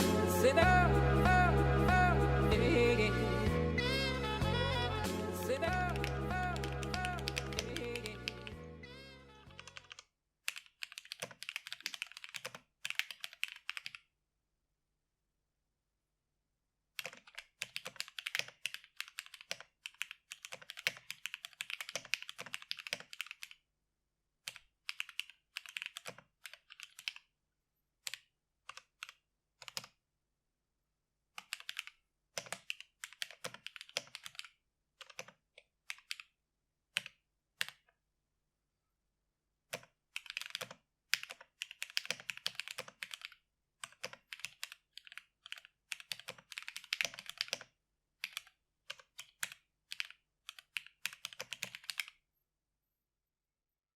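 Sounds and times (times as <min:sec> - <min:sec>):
mechanical keyboard typing: 0:05.6 - 0:08.5, 0:09.5 - 0:14.0, 0:17.0 - 0:23.6, 0:24.5 - 0:27.3, 0:28.1 - 0:30.0, 0:31.4 - 0:36.3, 0:37.0 - 0:37.9, 0:39.7 - 0:52.2.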